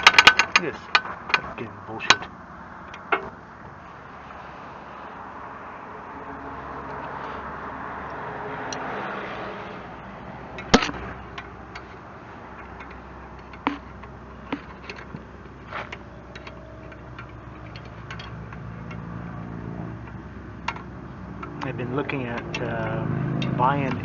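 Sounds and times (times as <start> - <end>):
metallic clicks of hand tools: 0.0 - 2.3, 12.5 - 19.1, 20.0 - 24.0.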